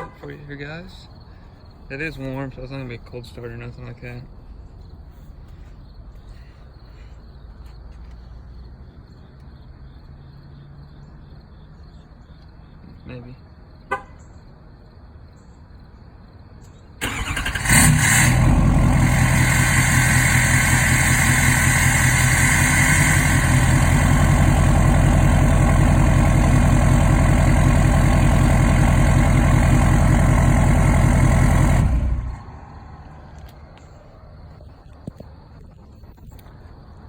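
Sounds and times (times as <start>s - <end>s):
diesel engine cranking: 17.0s - 33.9s
diesel engine idling: 17.0s - 34.3s.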